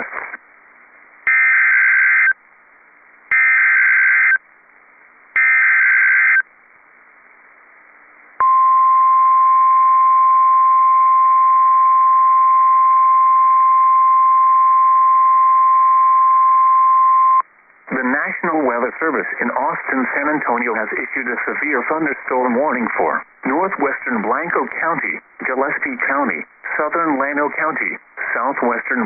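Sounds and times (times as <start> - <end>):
steady warning alarm tone: 5.4 - 6.4.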